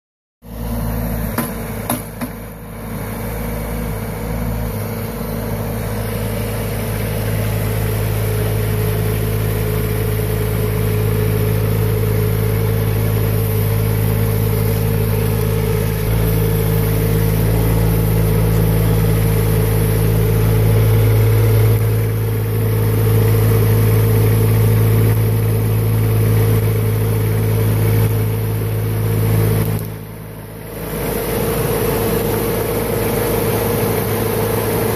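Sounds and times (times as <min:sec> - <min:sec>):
mini skid steer engine running: 0:00.4 - 0:34.9
knocks: 0:01.4 - 0:02.4.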